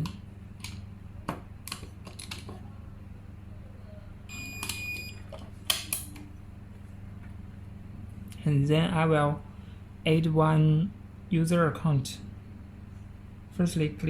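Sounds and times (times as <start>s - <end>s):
faint low hum: 0.0s - 14.0s
keypad lock beep: 4.3s - 5.3s.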